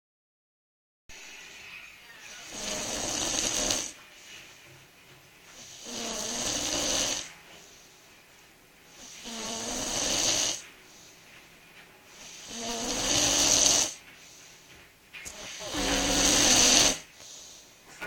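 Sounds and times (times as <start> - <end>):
person snoring: 2.4 - 4.0, 5.6 - 7.3, 9.0 - 10.6, 12.2 - 14.0, 15.3 - 17.1.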